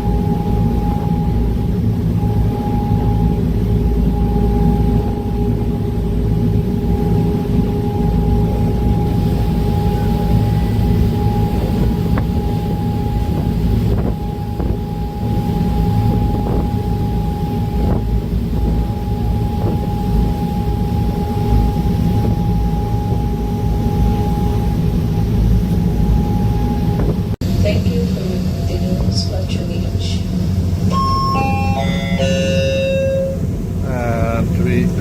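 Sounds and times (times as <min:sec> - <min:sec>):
ferry engines deep rumble: 0:00.0 - 0:35.0
steady engine whine: 0:00.0 - 0:35.0.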